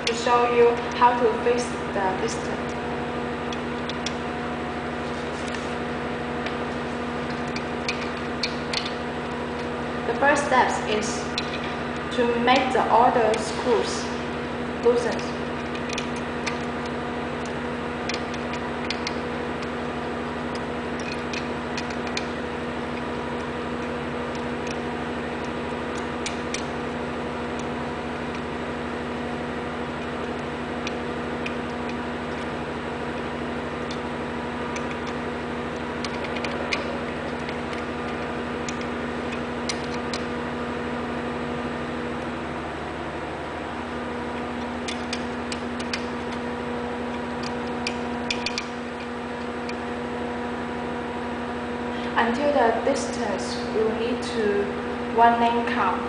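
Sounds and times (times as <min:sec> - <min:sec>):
machine hum: 0:00.0 - 0:56.0
light metallic clicks: 0:47.1 - 0:49.1.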